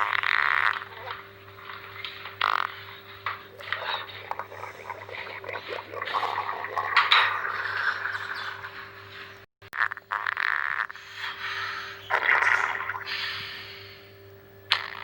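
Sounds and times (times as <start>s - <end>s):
stomach growling and gurgling: 0.0s - 11.4s, 12.0s - 13.4s, 14.7s - 15.0s.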